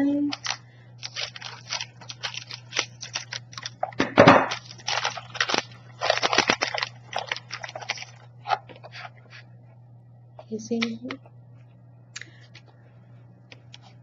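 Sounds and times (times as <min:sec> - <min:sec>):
brittle pieces snapping: 0:00.3 - 0:08.6
pouch crinkling: 0:00.3 - 0:09.4.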